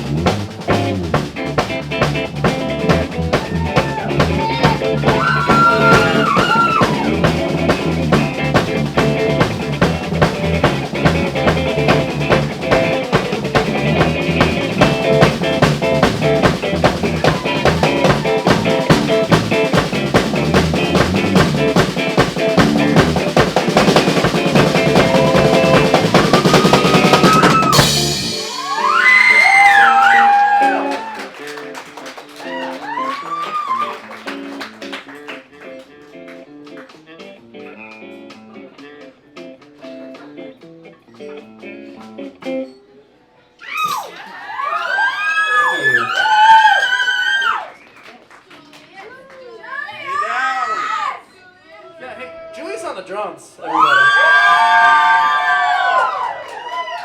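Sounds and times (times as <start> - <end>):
drum kit beat: 0.0 - 42.6
live band playing: 0.0 - 43.0
guitar with bent notes: 0.0 - 43.6.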